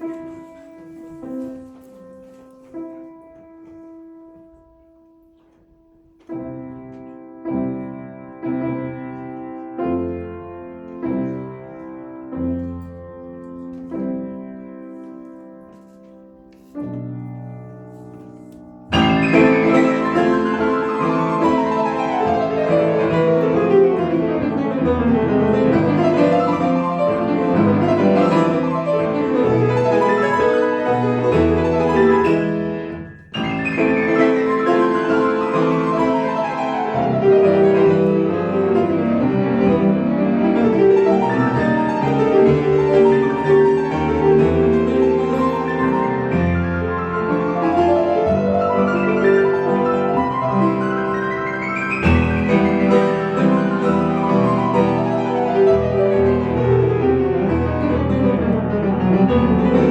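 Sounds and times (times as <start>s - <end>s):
solo grand piano playing: 0.0s - 59.9s.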